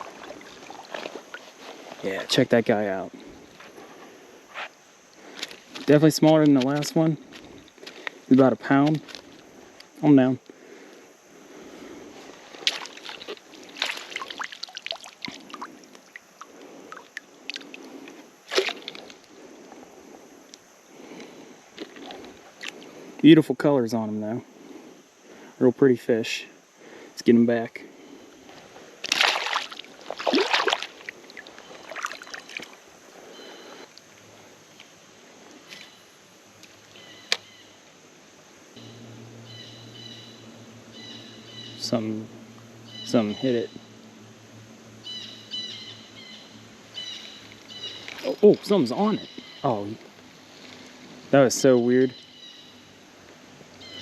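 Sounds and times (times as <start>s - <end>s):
creek water splashing: 0.0s - 2.0s, 10.6s - 20.0s, 28.4s - 34.1s, 46.9s - 49.2s.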